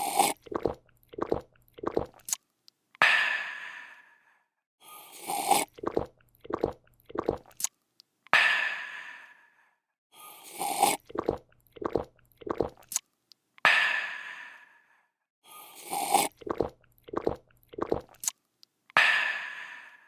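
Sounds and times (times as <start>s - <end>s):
person gulping: 0.0s - 2.3s, 5.5s - 7.6s, 10.9s - 13.0s, 16.0s - 18.3s
slurp: 0.0s - 2.4s, 5.1s - 7.7s, 10.4s - 13.0s, 15.7s - 18.4s.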